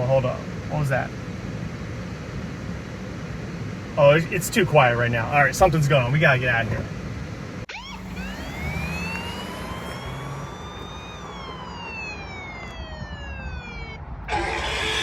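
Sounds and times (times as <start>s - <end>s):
low steady rumble: 0.0s - 15.0s
siren wailing: 7.7s - 15.0s.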